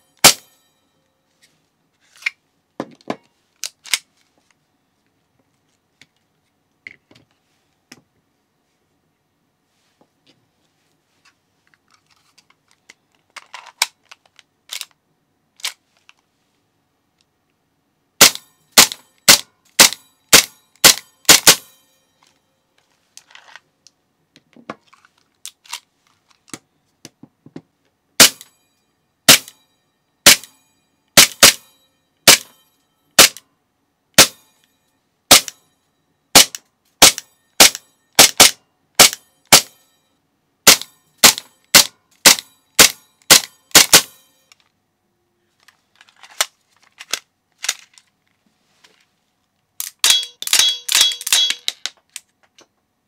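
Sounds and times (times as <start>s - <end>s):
airsoft pistol shots: 18.2s - 21.7s, 28.2s - 28.4s, 29.3s - 29.5s, 32.3s - 32.5s, 34.2s - 34.4s, 35.3s - 35.6s, 36.4s - 39.8s, 40.7s - 44.2s.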